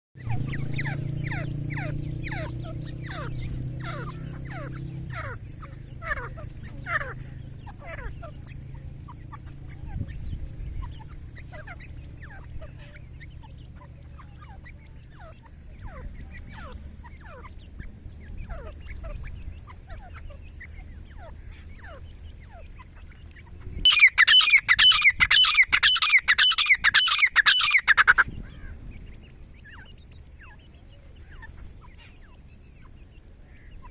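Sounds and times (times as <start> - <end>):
bird harsh repeated notes: 0.2 - 8.4, 23.9 - 28.4.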